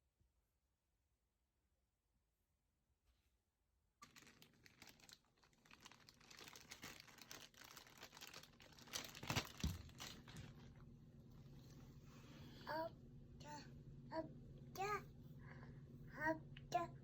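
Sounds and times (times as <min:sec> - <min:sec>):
crinkling and rustling: 0:04.0 - 0:12.0.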